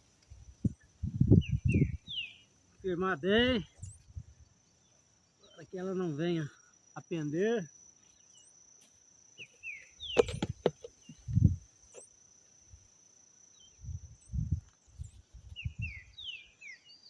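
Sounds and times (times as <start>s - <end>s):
insect buzzing: 0.0s - 17.0s
birds chirping: 0.6s - 7.3s, 9.4s - 12.1s, 13.5s - 17.0s
thumps of soil pressed down: 10.0s - 12.1s.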